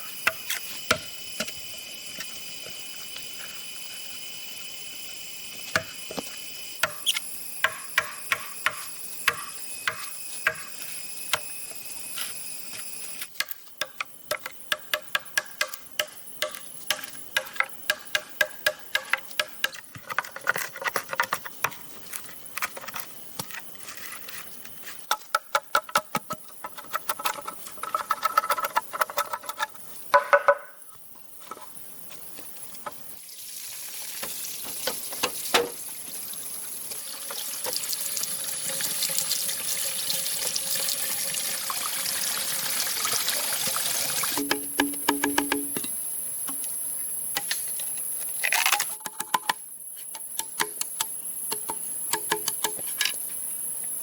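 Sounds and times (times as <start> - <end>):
running water: 33.2 - 45.1.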